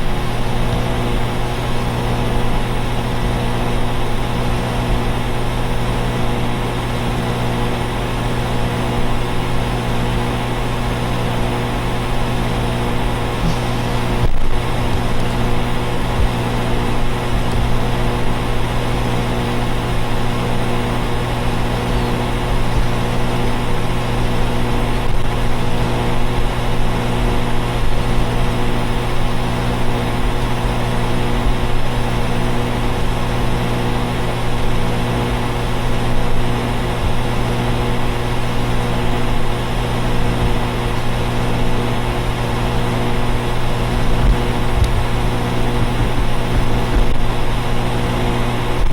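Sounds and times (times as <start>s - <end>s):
air conditioner units humming: 0.0s - 48.9s
fans rushing: 10.6s - 25.1s.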